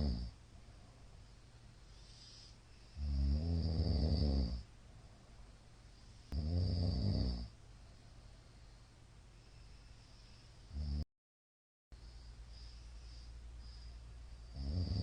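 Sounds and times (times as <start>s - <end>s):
man snoring: 0.0s - 0.4s, 3.0s - 4.6s, 6.3s - 7.5s, 10.7s - 11.0s, 14.4s - 15.0s.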